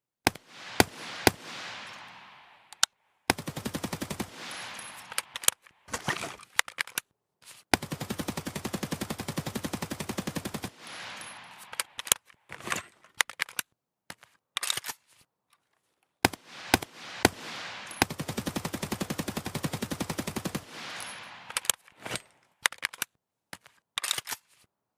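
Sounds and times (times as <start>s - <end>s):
assault rifle automatic fire: 3.3s - 5.4s, 7.8s - 12.0s, 16.3s - 21.7s.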